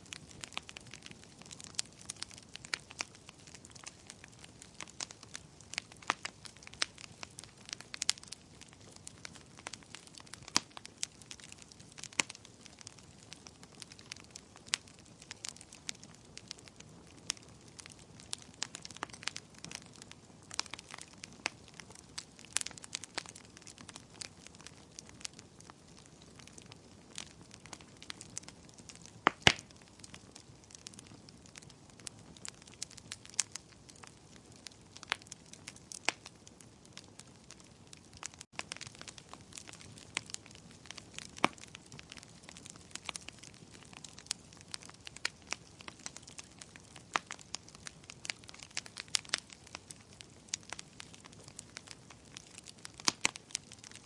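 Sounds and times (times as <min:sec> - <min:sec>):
low steady hiss: 0:00.0 - 0:11.2
bonfire wood crackling and popping: 0:00.0 - 0:54.0.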